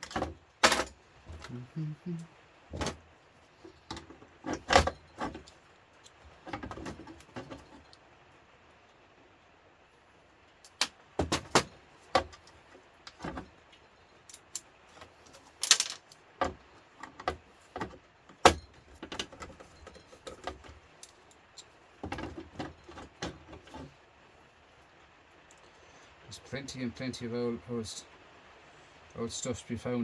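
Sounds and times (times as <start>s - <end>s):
metal grill parts clinking: 14.1s - 16.2s.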